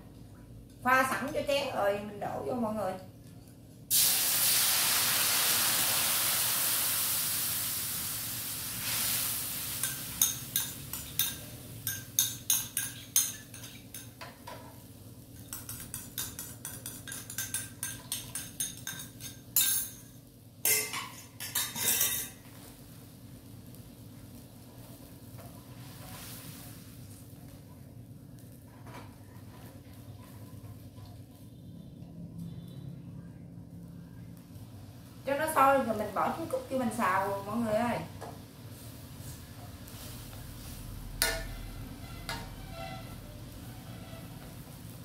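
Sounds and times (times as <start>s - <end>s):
sauce sizzling in hot oil: 3.8s - 27.6s.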